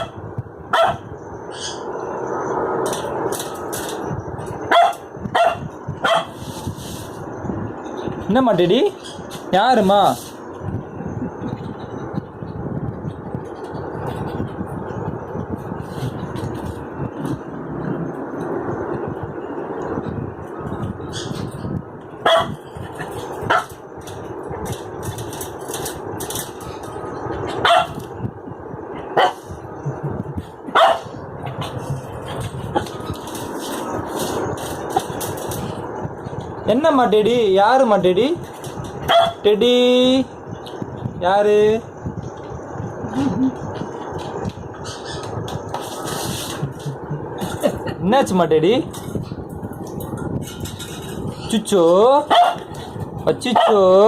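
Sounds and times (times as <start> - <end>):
dog barking: 0.0 - 1.1, 4.7 - 6.3, 22.2 - 22.6, 27.6 - 28.0, 29.2 - 29.4, 30.7 - 31.1, 39.1 - 39.4, 52.3 - 52.6, 53.6 - 53.8
steady background noise: 0.0 - 54.0.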